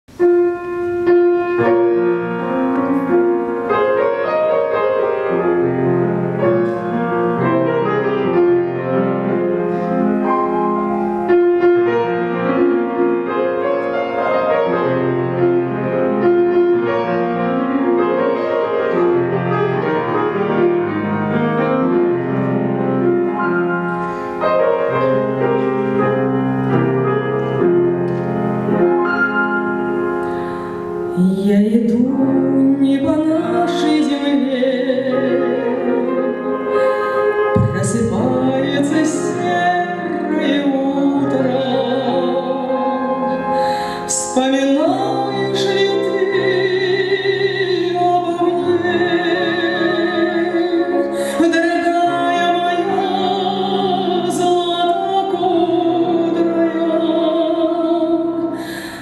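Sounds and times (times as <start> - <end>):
grand piano playing tango: 0.1 - 59.0.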